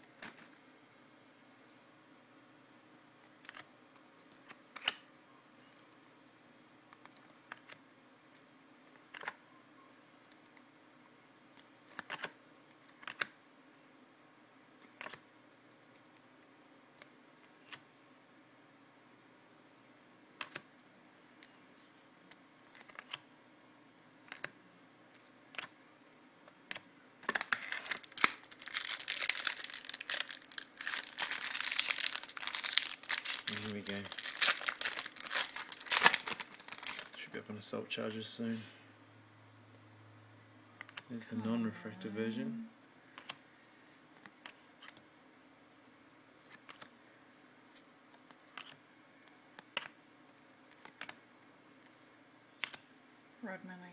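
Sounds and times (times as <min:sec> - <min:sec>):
cards being handled clicking: 0:11.5 - 0:13.3, 0:20.4 - 0:20.7, 0:22.3 - 0:23.2, 0:24.2 - 0:24.6, 0:25.5 - 0:25.7, 0:43.2 - 0:43.4, 0:46.4 - 0:46.9, 0:47.7 - 0:48.8, 0:49.6 - 0:50.0, 0:50.7 - 0:51.2, 0:52.6 - 0:52.8
wrapper tearing and crinkling: 0:27.2 - 0:37.2.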